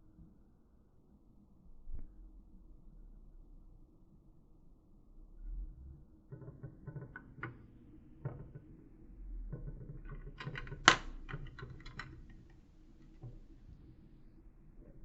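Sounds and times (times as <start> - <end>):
light clicks and knocks: 6.3 - 8.9, 9.5 - 13.9.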